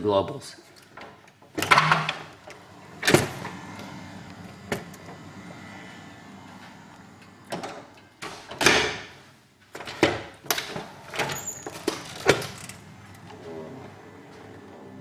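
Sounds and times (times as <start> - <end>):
high door squeak: 11.1 - 13.8.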